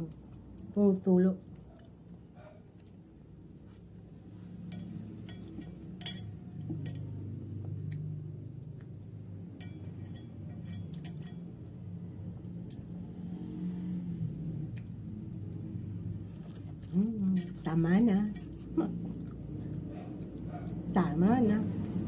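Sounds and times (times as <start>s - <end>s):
low steady hum: 0.0s - 22.0s
utensils clinking on a plate: 4.7s - 7.2s, 9.6s - 11.5s.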